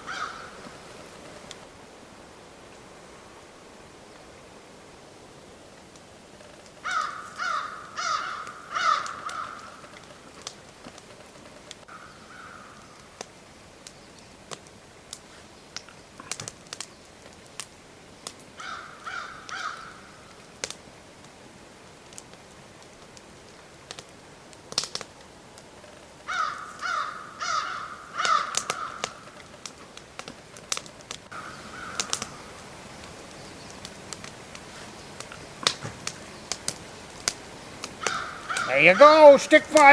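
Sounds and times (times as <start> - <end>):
crow cawing: 0.1 - 0.5, 6.8 - 9.8, 11.9 - 12.8, 18.6 - 19.9, 26.3 - 29.2, 31.4 - 32.2, 38.0 - 39.1.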